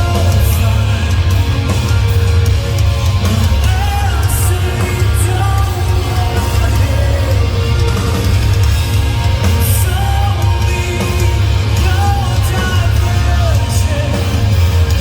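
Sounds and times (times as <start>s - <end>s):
heavy rock band playing: 0.0s - 15.0s
person singing: 3.4s - 8.3s, 9.5s - 15.0s.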